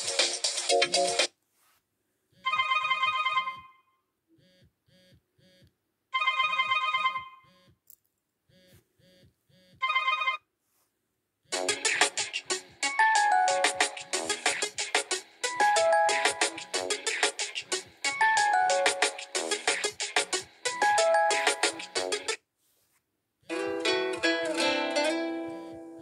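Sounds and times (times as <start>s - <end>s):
phone ringtone trill: 2.4s - 3.9s, 6.2s - 7.7s, 9.8s - 10.4s, 12.8s - 14.8s, 15.4s - 17.2s, 18.0s - 20.0s, 20.7s - 22.3s.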